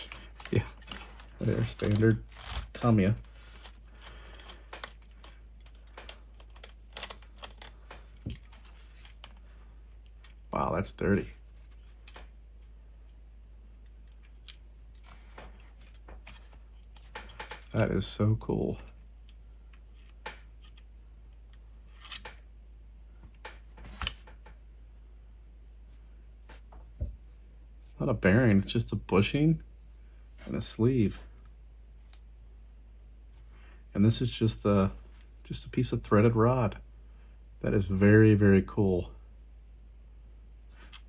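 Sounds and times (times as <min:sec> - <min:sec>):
clicks and scrapes of small parts: 0:00.0 - 0:10.4, 0:11.4 - 0:13.2, 0:13.8 - 0:17.8, 0:18.8 - 0:22.5, 0:31.4 - 0:32.3, 0:40.6 - 0:41.0.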